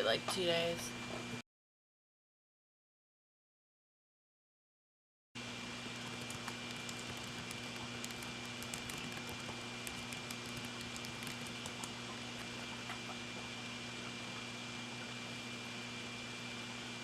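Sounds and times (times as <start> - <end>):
low hum and hiss: 0.0 - 1.4, 5.4 - 17.0
faint clicks: 6.1 - 12.0.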